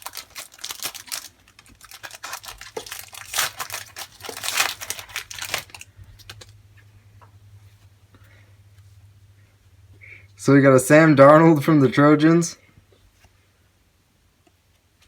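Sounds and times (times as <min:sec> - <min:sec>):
wrapper tearing and crinkling: 0:00.0 - 0:06.5.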